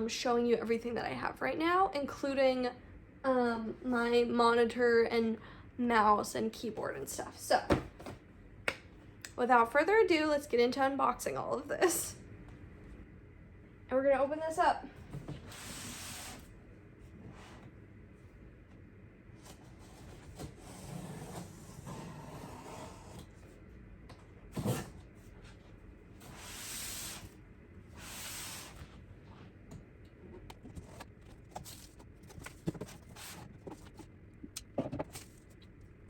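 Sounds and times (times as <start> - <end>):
cardboard rustling and scraping: 30.6 - 34.1.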